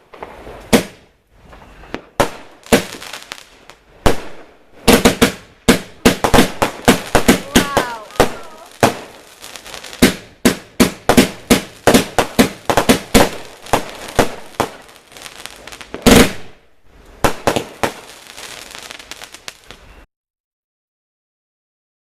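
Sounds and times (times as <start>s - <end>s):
firework cake bangs: 1.9s - 3.3s, 4.0s - 9.2s, 9.8s - 16.5s.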